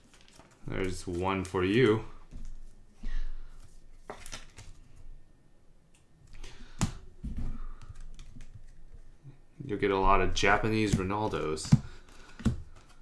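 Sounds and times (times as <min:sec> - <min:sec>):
cards being shuffled: 0:00.0 - 0:02.7, 0:03.6 - 0:05.0, 0:06.0 - 0:09.2, 0:10.4 - 0:13.0.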